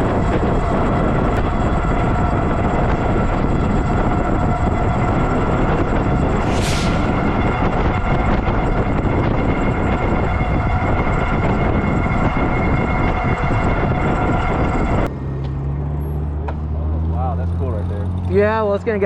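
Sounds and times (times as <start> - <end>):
wind rushing over microphone: 0.0 - 15.2.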